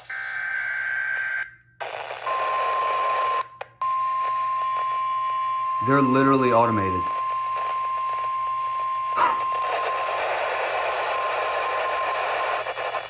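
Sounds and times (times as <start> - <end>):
weather radio alert tone: 5.8 - 7.1.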